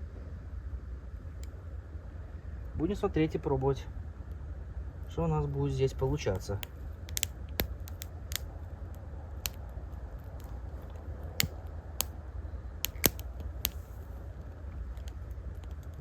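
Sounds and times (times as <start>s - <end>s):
twigs snapping: 6.2s - 12.2s, 12.8s - 14.1s.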